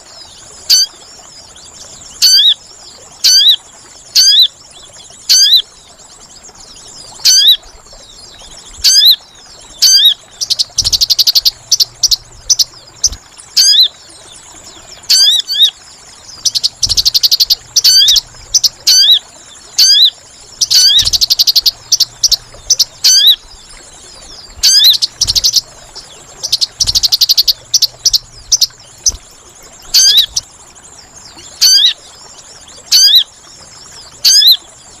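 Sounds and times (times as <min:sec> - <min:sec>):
buzzy bird trills: 0:07.2 - 0:07.6, 0:09.8 - 0:13.9, 0:15.0 - 0:19.2, 0:19.8 - 0:23.5, 0:24.2 - 0:30.4, 0:31.6 - 0:32.0.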